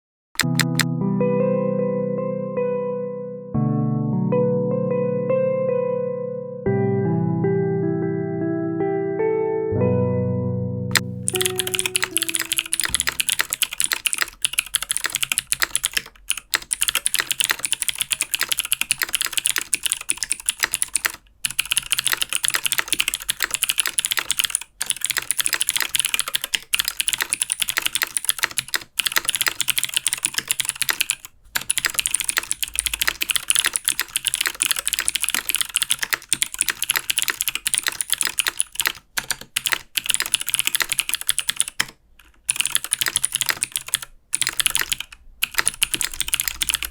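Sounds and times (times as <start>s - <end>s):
mechanical keyboard typing: 0.4s - 0.9s, 10.9s - 46.9s.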